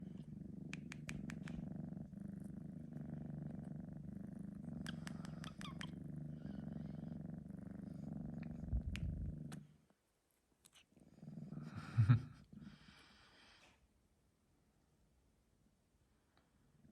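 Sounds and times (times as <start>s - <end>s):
kitten purring: 0.0s - 9.9s, 10.7s - 13.0s
faint clicks: 0.6s - 1.7s, 4.8s - 6.0s.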